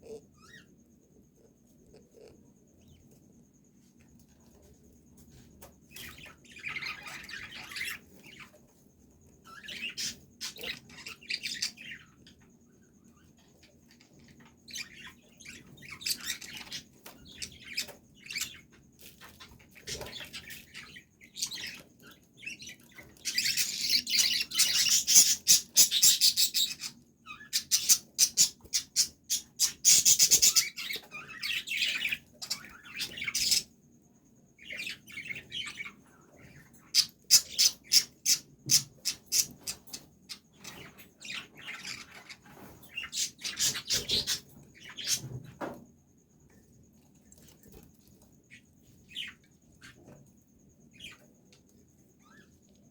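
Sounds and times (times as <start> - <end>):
small birds chirping: 0.0 - 52.9.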